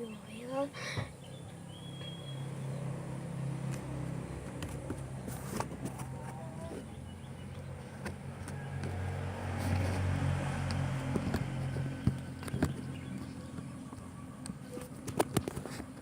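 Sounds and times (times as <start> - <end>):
low engine rumble: 0.0 - 16.0.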